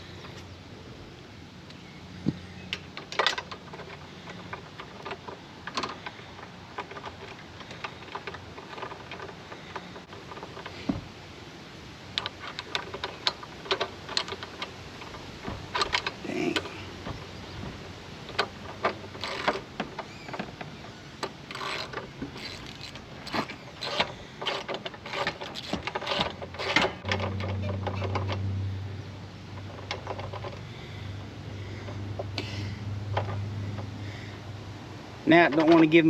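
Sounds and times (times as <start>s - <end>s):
ratchet clicking against metal: 18.3s - 20.1s, 21.2s - 27.0s.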